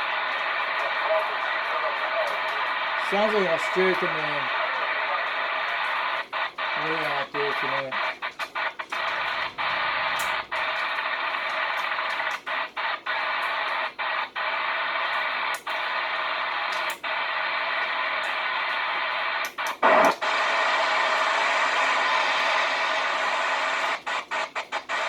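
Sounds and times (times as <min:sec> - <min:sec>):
radio receiver hiss: 0:00.0 - 0:25.0
short louder radio burst: 0:06.6 - 0:08.1.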